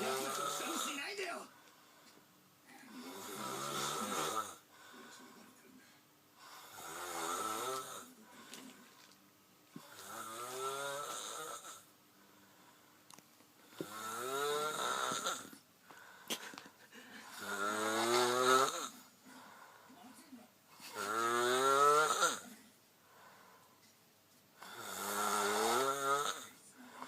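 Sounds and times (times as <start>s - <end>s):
person snoring: 0.0s - 1.0s, 2.9s - 5.3s, 6.4s - 8.6s, 9.8s - 11.8s, 13.7s - 15.5s, 17.2s - 19.0s, 20.9s - 22.5s, 24.6s - 27.0s
quiet breathing: 1.4s - 21.1s, 22.2s - 24.0s, 25.8s - 27.0s.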